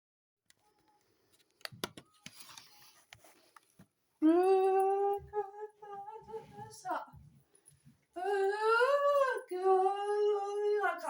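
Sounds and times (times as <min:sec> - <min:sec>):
soft clicks and rustles: 0:00.5 - 0:04.0.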